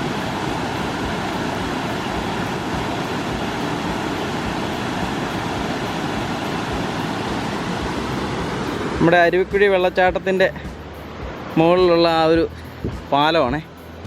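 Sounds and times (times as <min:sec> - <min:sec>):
waterfall rushing: 0:00.0 - 0:14.0.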